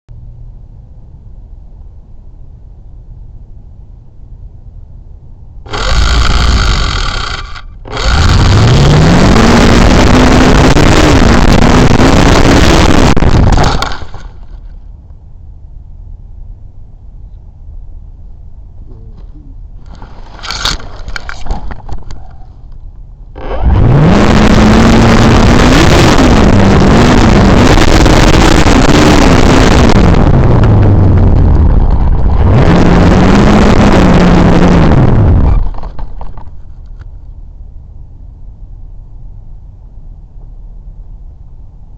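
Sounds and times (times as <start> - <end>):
model plane electric motor and propeller: 5.7 - 14.4, 32.9 - 37.0.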